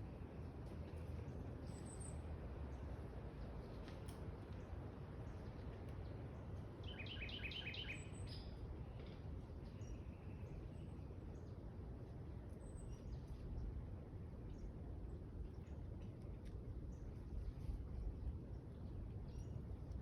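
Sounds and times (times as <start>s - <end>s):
bird chirps: 6.9s - 8.4s
low background rumble: 8.2s - 20.0s.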